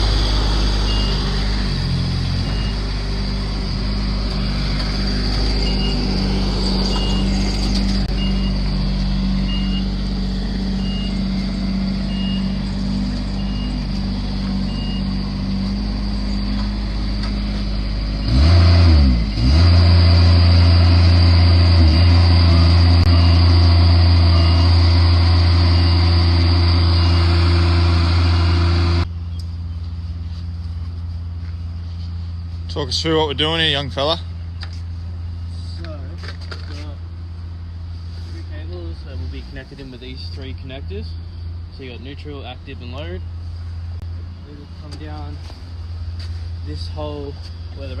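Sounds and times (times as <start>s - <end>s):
vehicle engine running: 0.0s - 48.0s
short high beep: 9.4s - 10.0s, 21.5s - 27.5s.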